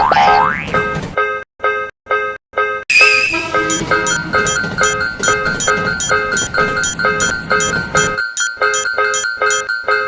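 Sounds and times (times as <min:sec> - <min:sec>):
railroad crossing bell ringing: 0:02.9 - 0:10.0.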